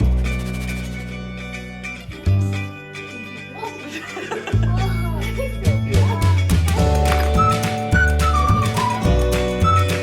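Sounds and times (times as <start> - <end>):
upbeat instrumental music: 0.0 - 10.0
high melody line: 5.3 - 10.0.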